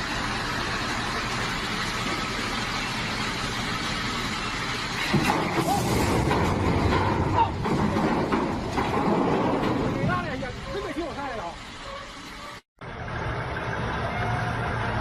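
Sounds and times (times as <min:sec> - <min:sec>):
motor vehicle engine droning: 0:11.6 - 0:15.0.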